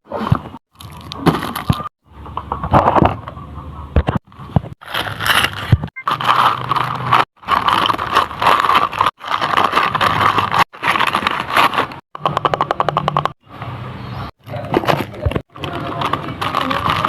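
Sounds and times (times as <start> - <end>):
packaging scraping and crinkling: 4.8 - 12.0, 14.4 - 17.0.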